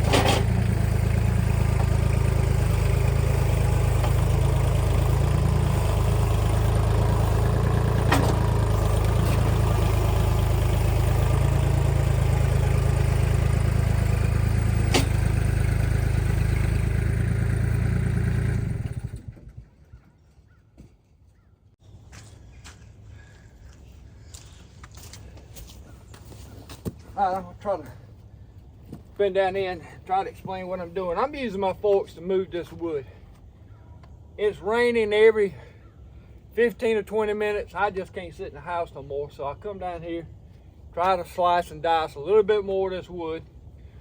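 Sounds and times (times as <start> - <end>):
diesel tractor engine running: 0.0 - 19.6
sharp metallic clanks: 14.8 - 15.4.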